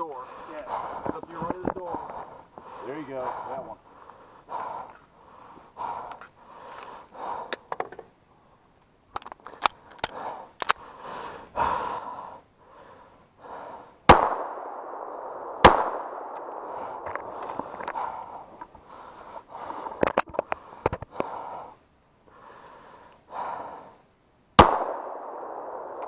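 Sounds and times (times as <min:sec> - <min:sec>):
heavy rhythmic breathing: 0:00.0 - 0:08.0, 0:09.4 - 0:24.2
pistol shots ringing: 0:14.1 - 0:16.6, 0:24.6 - 0:26.0.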